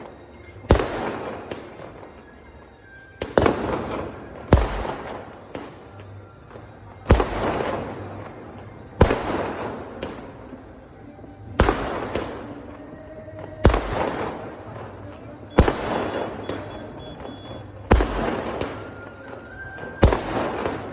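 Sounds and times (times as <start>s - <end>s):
loud bangs with rumbling echo: 0.7s - 2.1s, 3.2s - 5.9s, 7.1s - 8.4s, 9.0s - 10.6s, 11.6s - 12.7s, 13.4s - 17.0s, 17.8s - 19.0s, 20.0s - 20.9s.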